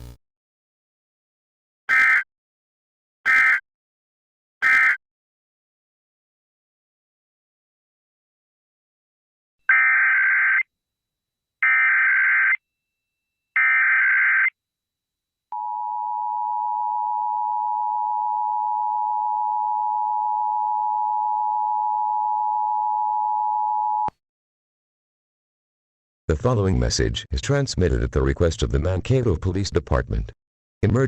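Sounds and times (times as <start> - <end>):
warbling digital data screech: 1.9 - 2.3, 3.3 - 3.6, 4.6 - 5.0.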